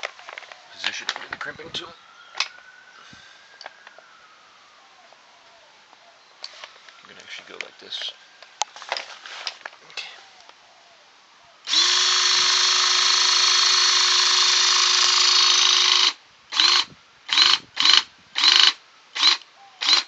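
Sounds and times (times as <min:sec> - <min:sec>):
crimping tool motor running: 0:11.7 - 0:20.0.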